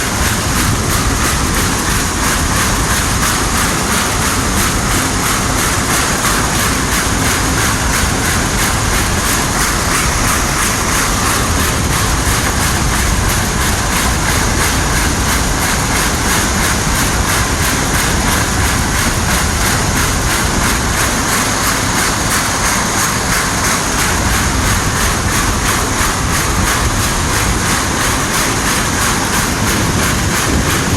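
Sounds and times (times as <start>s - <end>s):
diesel engine droning: 0.0s - 30.9s.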